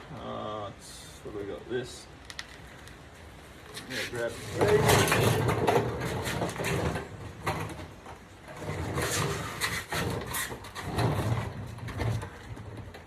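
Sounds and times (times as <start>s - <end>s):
objects knocking and scraping: 3.7s - 13.0s.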